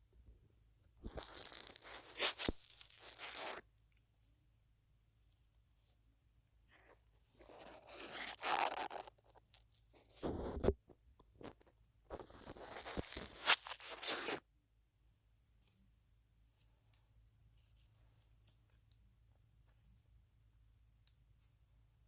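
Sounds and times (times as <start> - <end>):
scratchy rubbing on microphone: 1.0 - 3.6, 6.7 - 14.4.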